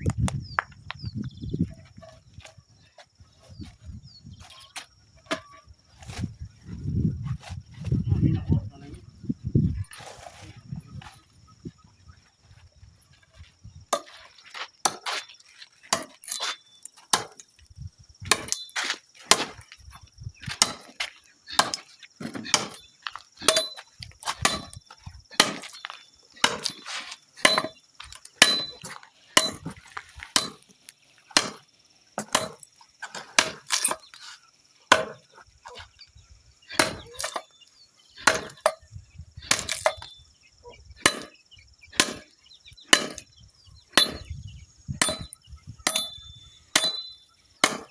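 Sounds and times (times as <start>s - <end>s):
hand tool chopping wood: 13.9s - 15.3s, 15.9s - 17.5s, 18.3s - 19.6s, 20.4s - 31.6s, 32.2s - 34.2s, 34.9s - 35.3s, 36.7s - 37.5s, 38.2s - 38.8s, 39.5s - 40.1s, 41.0s - 42.3s, 42.9s - 43.3s, 43.9s - 44.4s, 45.0s - 47.9s.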